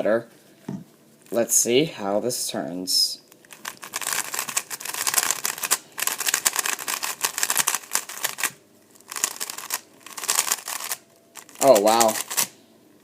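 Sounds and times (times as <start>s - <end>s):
speed cube plastic clicking: 3.5s - 12.6s.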